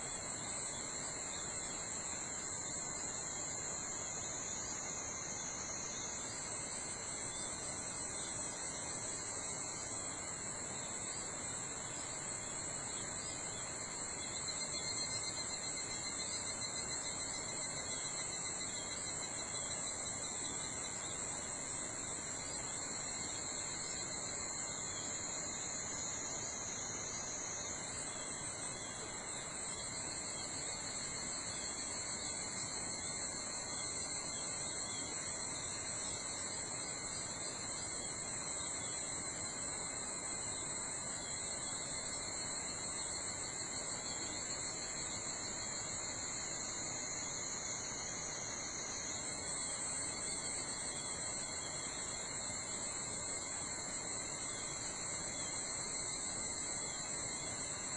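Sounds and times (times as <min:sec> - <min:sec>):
insects trilling: 0:00.0 - 0:57.9
soft forest background hiss: 0:00.0 - 0:57.9.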